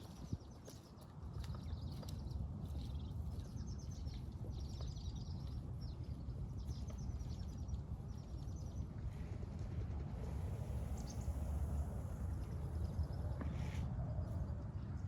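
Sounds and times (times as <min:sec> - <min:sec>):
steady low rumble: 0:05.8 - 0:15.0.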